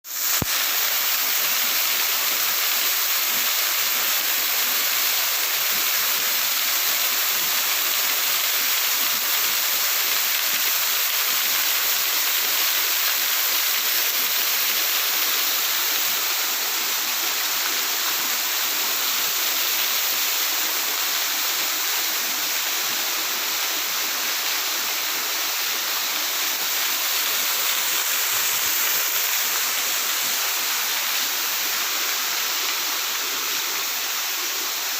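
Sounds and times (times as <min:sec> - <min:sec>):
waterfall roaring: 0:15.0 - 0:34.9.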